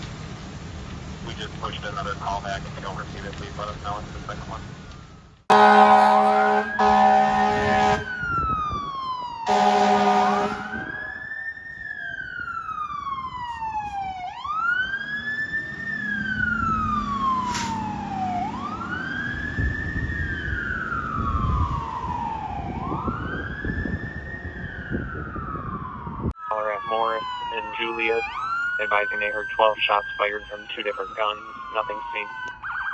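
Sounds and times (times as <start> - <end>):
fire engine siren wailing: 1.5 - 32.9
air horn blast: 5.5 - 8.2, 9.4 - 11.1.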